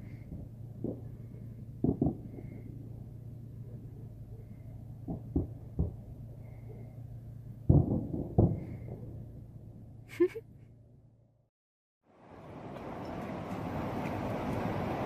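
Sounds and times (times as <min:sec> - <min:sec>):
distant fireworks booms: 0:00.0 - 0:09.6
steady low hum: 0:00.0 - 0:11.5.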